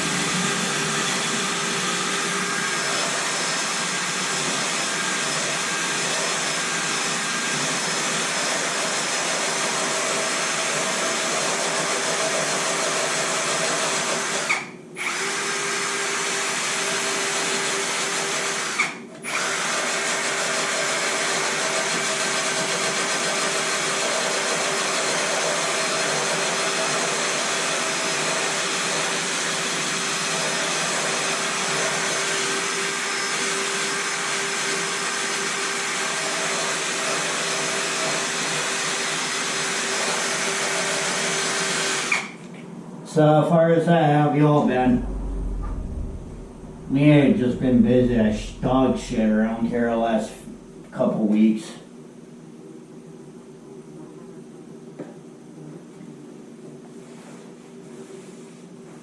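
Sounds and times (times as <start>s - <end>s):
steady hum: 42.8s - 52.2s.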